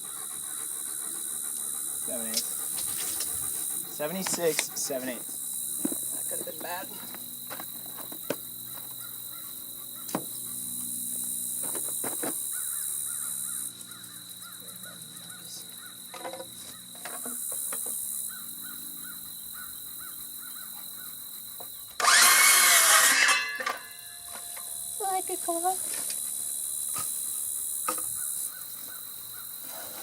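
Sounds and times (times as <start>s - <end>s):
insects buzzing: 0.0s - 30.0s
crows cawing: 12.5s - 14.6s
power saw cutting wood: 22.0s - 24.1s.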